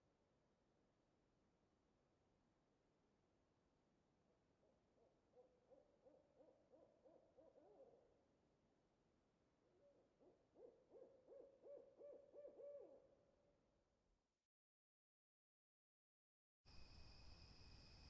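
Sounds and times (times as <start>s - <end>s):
owl hooting: 4.6s - 8.2s, 9.7s - 13.3s.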